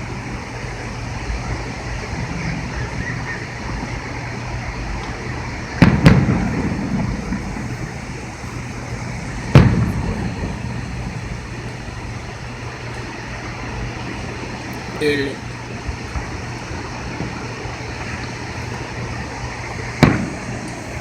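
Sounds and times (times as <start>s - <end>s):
fireworks bangs: 4.8s - 12.8s, 17.1s - 21.0s.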